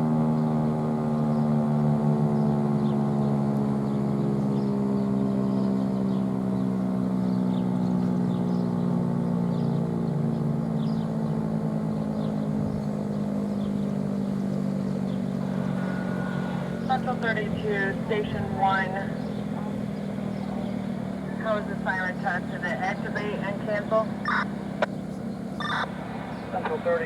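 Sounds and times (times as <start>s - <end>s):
dual-tone warning siren: 21.3s - 24.6s, 25.6s - 26.0s.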